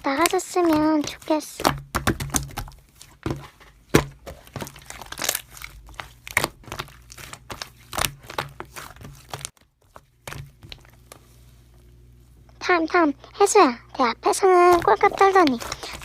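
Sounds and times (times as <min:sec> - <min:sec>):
slime crackling and popping: 0:00.0 - 0:11.2, 0:14.6 - 0:16.0.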